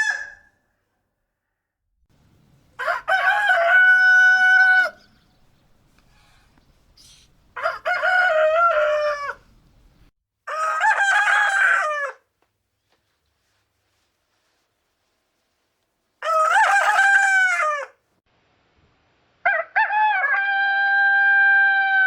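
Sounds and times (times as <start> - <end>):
rooster crowing: 2.8 - 5.2, 7.6 - 9.5, 10.5 - 12.2, 16.2 - 18.0, 19.5 - 22.0.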